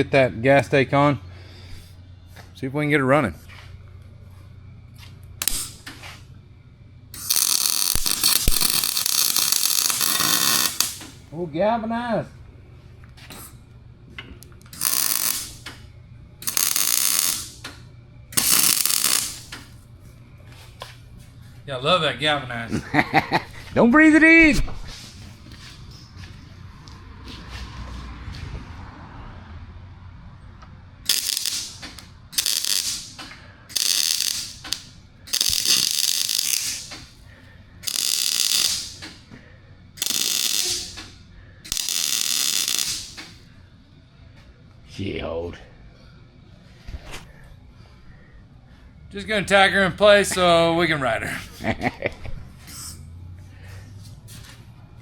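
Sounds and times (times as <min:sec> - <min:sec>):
welding arc crackling: 0:05.4 - 0:06.0, 0:07.2 - 0:11.2, 0:14.6 - 0:15.8, 0:16.4 - 0:19.8, 0:31.0 - 0:37.2, 0:37.8 - 0:39.2, 0:40.0 - 0:43.4.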